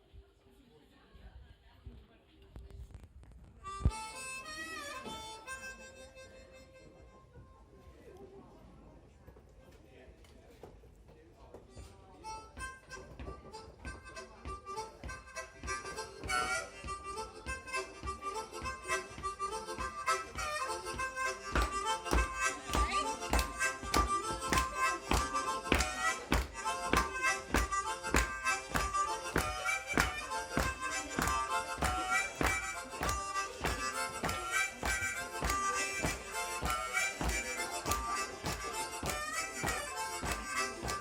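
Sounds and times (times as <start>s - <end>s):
harmonica melody: 3.6s - 7.3s, 12.2s - 41.0s
steady beat: 13.7s - 41.0s.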